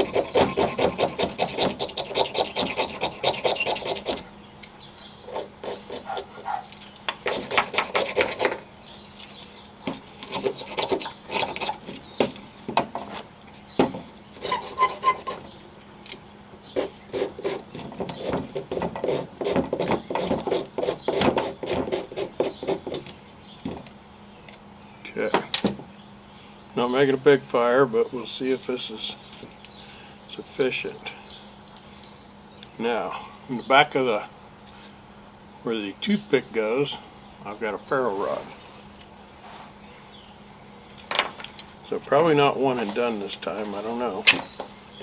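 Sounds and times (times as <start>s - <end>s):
knife scraping wood shavings: 0.0s - 4.3s, 5.2s - 8.7s, 10.1s - 12.1s, 14.4s - 15.5s, 16.8s - 23.1s.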